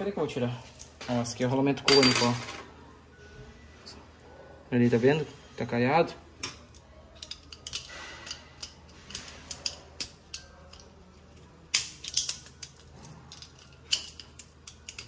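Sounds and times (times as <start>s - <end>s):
metal parts clicking and scraping: 6.7s - 15.0s.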